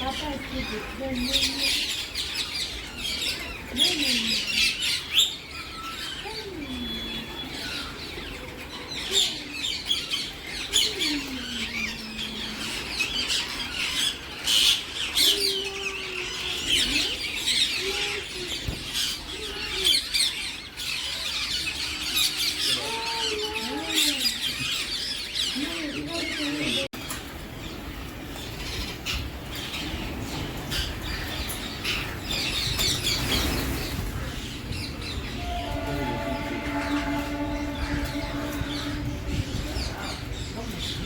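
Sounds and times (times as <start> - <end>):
parrots screeching and chattering: 0.1 - 26.9.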